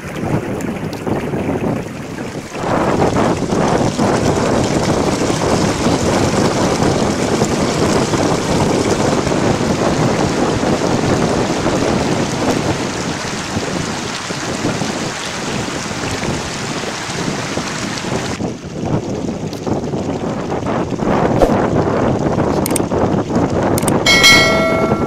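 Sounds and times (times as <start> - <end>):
mountain river rushing: 2.4 - 18.4.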